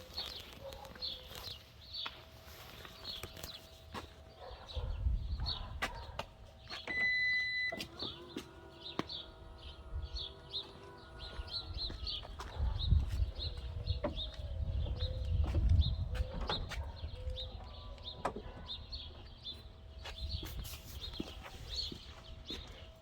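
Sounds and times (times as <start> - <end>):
birds chirping: 0.0 - 23.0
power door motor running: 6.7 - 16.2
car door beep: 6.8 - 8.0.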